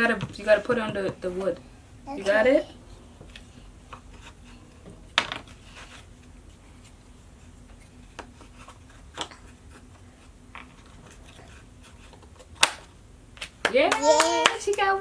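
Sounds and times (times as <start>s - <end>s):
wooden puzzle pieces knocking: 5.2s - 5.5s.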